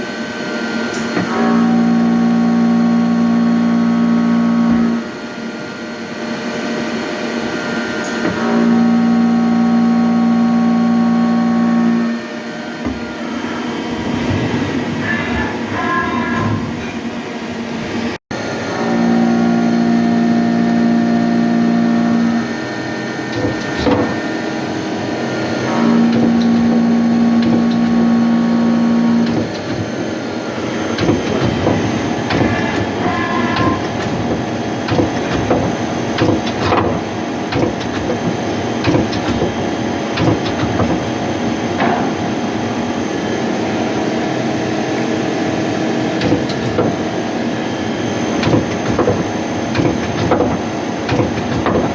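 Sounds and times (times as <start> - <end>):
mechanical clatter with ticks: 22.4 - 24.6, 25.4 - 42.4, 46.1 - 51.9.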